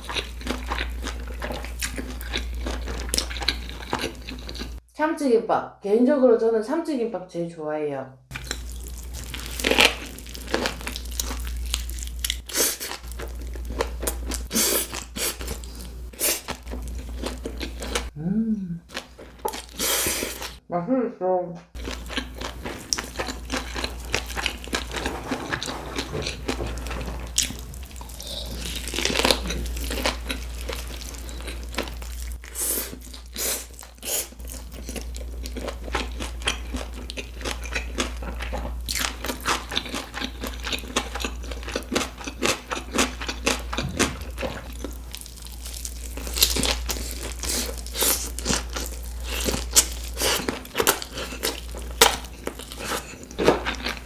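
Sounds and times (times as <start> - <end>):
crunchy chewing: 8.3 - 18.1, 21.8 - 54.0.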